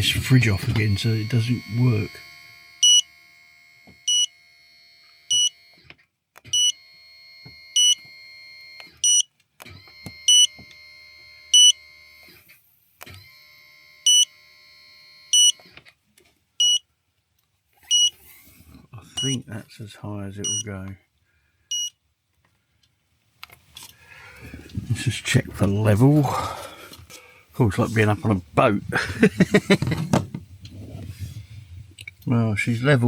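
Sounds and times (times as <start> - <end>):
electronic warning beeps: 0.0 - 3.2, 4.0 - 4.4, 5.3 - 5.6, 6.5 - 6.8, 7.7 - 8.0, 9.0 - 9.3, 10.2 - 10.6, 11.5 - 11.8, 14.0 - 14.3, 15.3 - 15.6, 16.6 - 16.8, 17.9 - 18.2, 19.2 - 19.4, 20.4 - 20.7, 21.7 - 22.0
faint high whine: 0.0 - 4.4.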